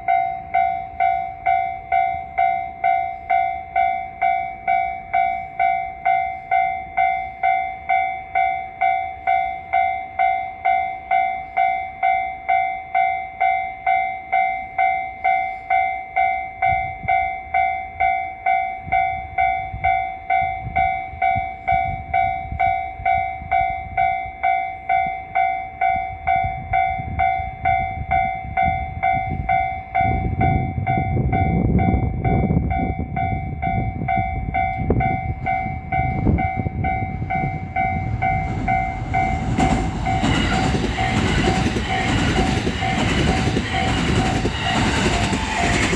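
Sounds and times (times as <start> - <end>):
train passing: 25.7 - 45.9
level crossing alarm dinging: 32.8 - 45.9.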